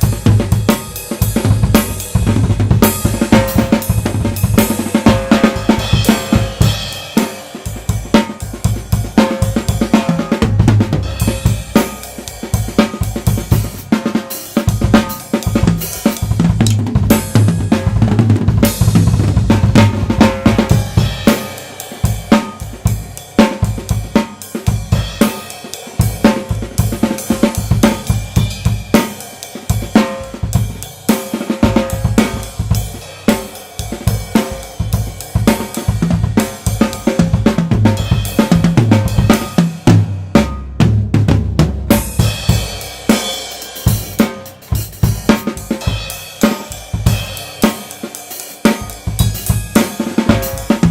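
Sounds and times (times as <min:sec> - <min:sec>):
drum kit playing: 0:00.0 - 0:50.9.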